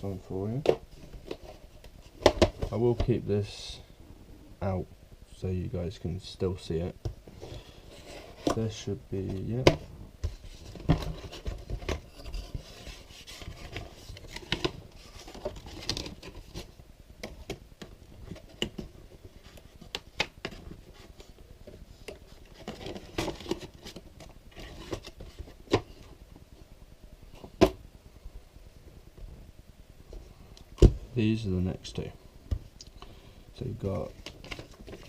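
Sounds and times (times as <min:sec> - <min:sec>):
packaging rustling: 0:10.3 - 0:17.6, 0:34.0 - 0:35.0.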